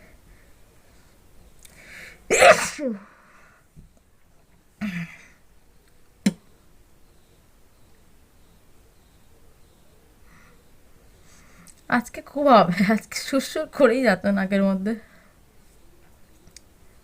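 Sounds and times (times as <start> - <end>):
woman sneezing: 2.3 - 3.1.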